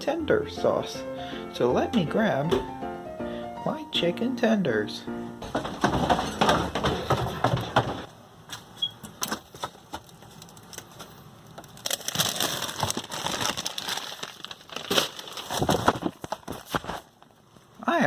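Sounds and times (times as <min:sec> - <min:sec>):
crackling rustles: 0:05.4 - 0:17.8.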